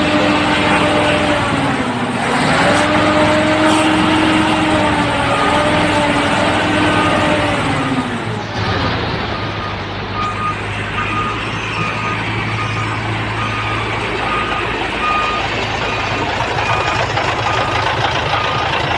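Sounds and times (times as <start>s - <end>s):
truck engine running: 0.0s - 18.9s
reversing alarm beeping: 9.3s - 18.9s.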